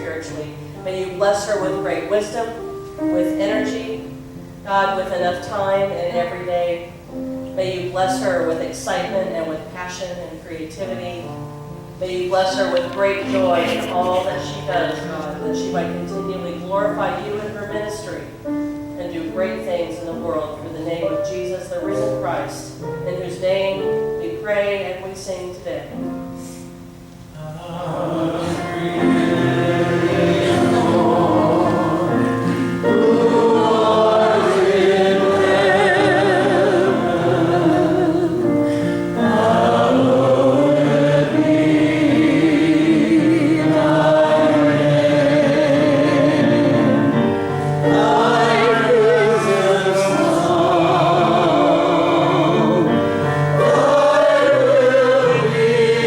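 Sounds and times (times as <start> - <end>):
group singing a hymn: 12.5 - 16.0, 27.6 - 56.0
instrumental accompaniment: 25.6 - 56.0.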